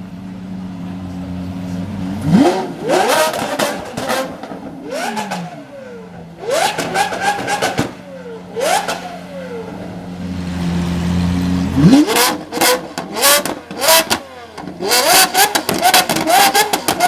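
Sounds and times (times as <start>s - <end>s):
car engines revving: 0.0s - 17.0s
exhaust cracks: 2.2s - 10.1s, 11.6s - 17.0s.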